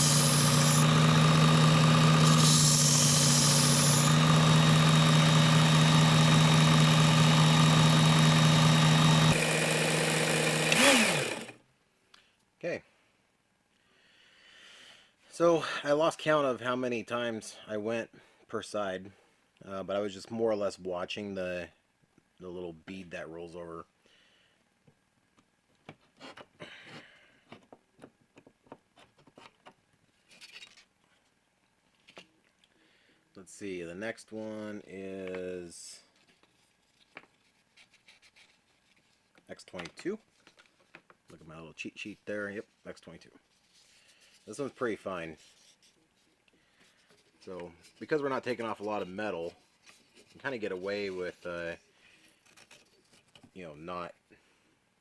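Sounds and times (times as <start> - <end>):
blade grinding on belt: 0.0 - 11.6
knife sharpener motor hum: 0.0 - 11.6
motor spinning down: 0.0 - 11.6.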